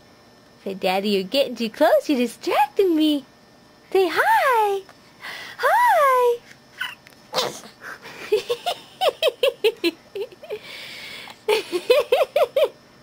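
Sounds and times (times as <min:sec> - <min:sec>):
baby squealing: 0:06.8 - 0:07.5.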